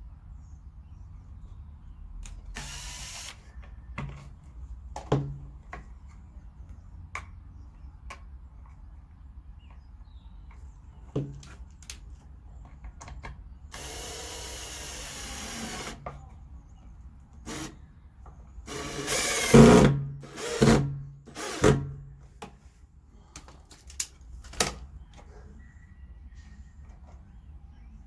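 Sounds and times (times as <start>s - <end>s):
power drill running: 2.6s - 3.4s, 13.7s - 16.0s, 17.5s - 17.7s, 18.7s - 22.0s.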